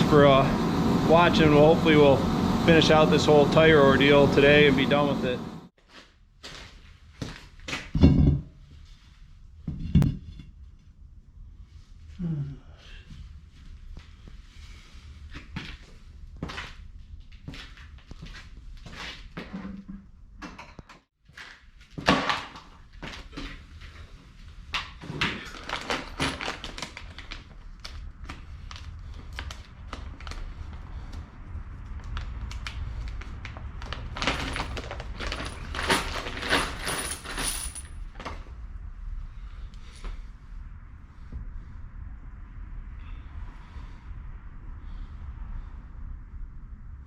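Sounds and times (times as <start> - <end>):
objects clicking and clattering: 25.2 - 27.2, 33.9 - 38.4.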